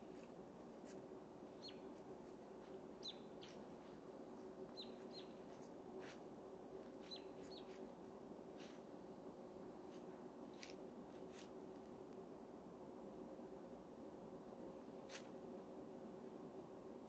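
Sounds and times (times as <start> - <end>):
low steady hum: 0.0 - 17.0
faint bird chirps: 1.5 - 2.0, 3.0 - 3.9, 4.6 - 6.2, 6.9 - 7.9.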